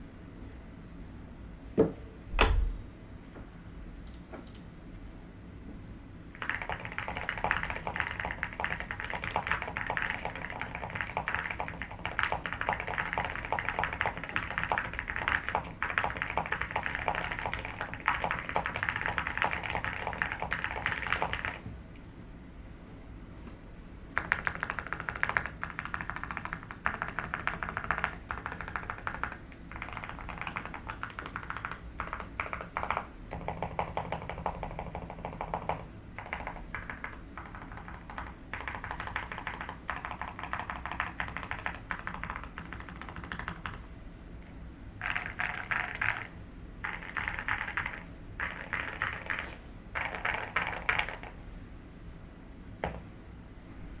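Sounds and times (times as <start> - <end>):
mechanical keyboard typing: 6.4 - 21.7, 24.2 - 43.8, 45.0 - 51.3.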